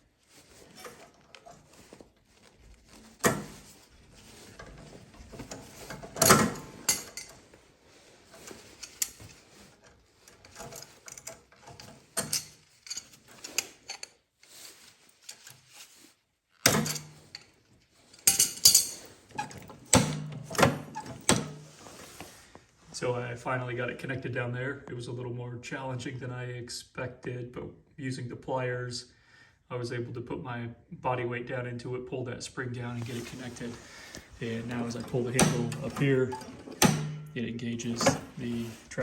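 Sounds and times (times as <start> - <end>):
metallic clicks and scrapes: 2.9 - 7.4, 8.3 - 16.0, 33.0 - 39.0.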